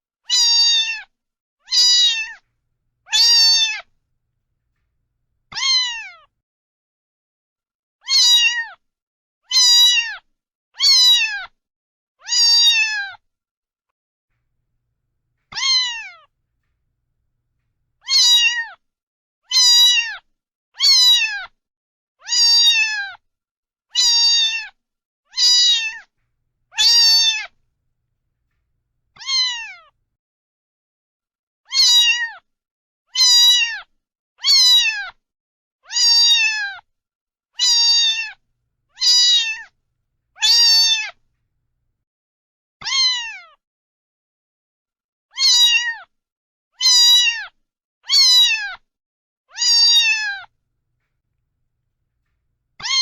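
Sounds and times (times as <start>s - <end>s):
cat meowing: 0.3s - 1.0s, 1.7s - 2.4s, 3.0s - 3.9s, 5.5s - 6.3s, 8.0s - 8.6s, 12.3s - 13.0s, 15.5s - 16.3s, 18.0s - 18.6s, 19.5s - 20.2s, 20.8s - 21.3s, 22.3s - 23.0s, 25.4s - 26.1s, 26.7s - 27.6s, 29.1s - 29.9s, 31.7s - 32.3s, 33.2s - 33.8s, 35.9s - 36.6s, 37.6s - 39.7s, 40.4s - 41.2s, 45.4s - 45.9s, 46.8s - 47.4s, 48.1s - 48.6s, 49.6s - 50.5s, 52.8s - 53.0s.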